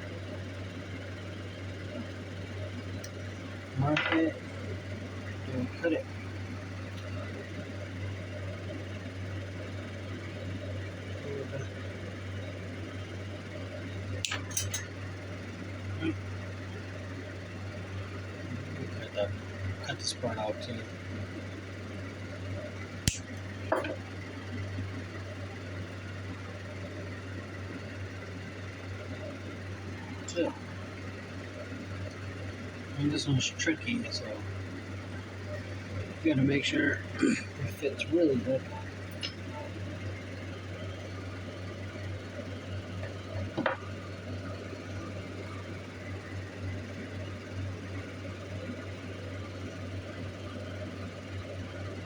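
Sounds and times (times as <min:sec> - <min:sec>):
steady low hum: 0:00.0 - 0:52.0
sharp click: 0:23.1 - 0:23.3
shears snipping metal strip: 0:23.1 - 0:23.3.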